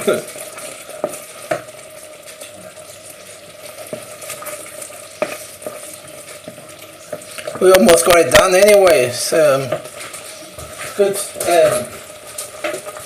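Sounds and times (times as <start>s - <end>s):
food sizzling in a pan: 0.0s - 13.0s.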